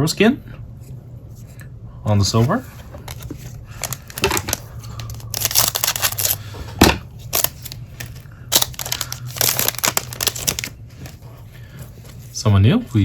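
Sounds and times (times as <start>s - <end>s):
foil wrapper crinkling: 3.0s - 6.5s, 7.2s - 11.2s.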